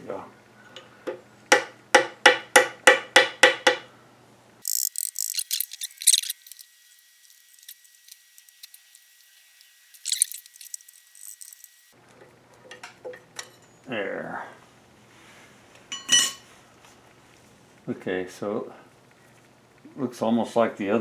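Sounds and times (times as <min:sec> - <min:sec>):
loose metal parts clinking: 0:04.6 - 0:11.8.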